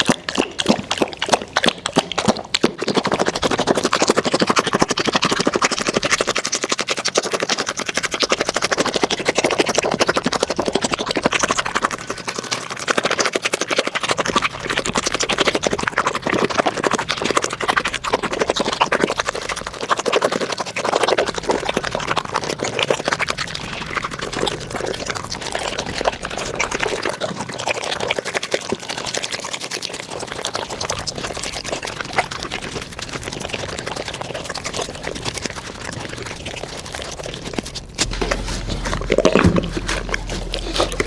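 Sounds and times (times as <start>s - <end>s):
dog lapping wet clicks: 0.0s - 41.0s
low hum: 37.8s - 41.0s.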